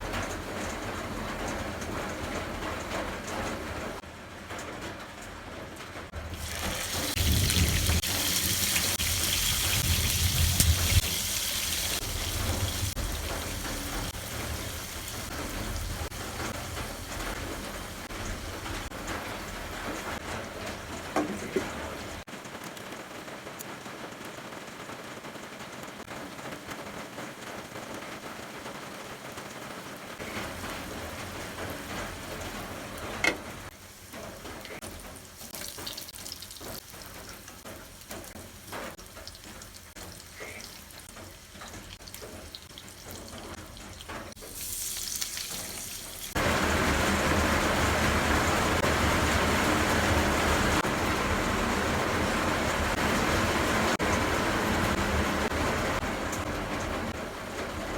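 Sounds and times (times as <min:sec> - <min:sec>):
meat sizzling in a pan: 0:06.4 - 0:18.6, 0:34.6 - 0:50.4.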